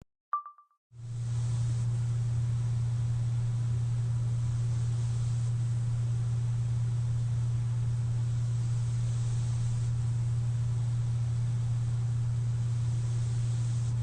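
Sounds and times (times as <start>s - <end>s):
airy hiss of airflow: 4.4s - 6.4s, 7.4s - 14.0s.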